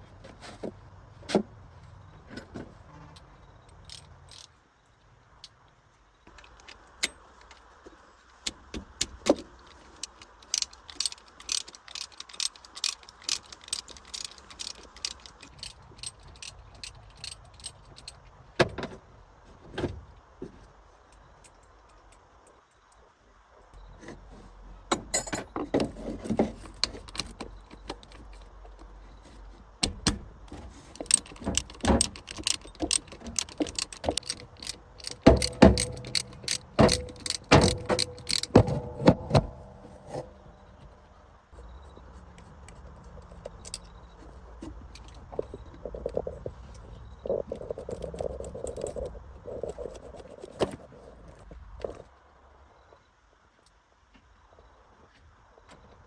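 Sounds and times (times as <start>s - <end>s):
metal tools clinking and knocking: 9.3s - 18.3s, 24.9s - 28.8s, 30.5s - 40.6s, 43.0s - 49.9s.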